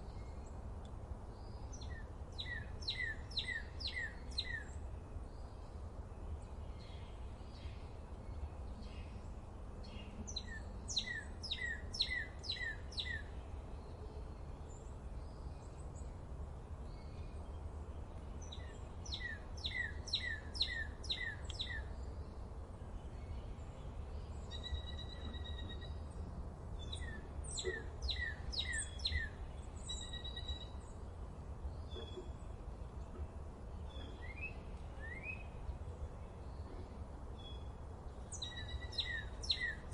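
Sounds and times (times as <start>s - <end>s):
faint bird calls: 31.8s - 32.6s.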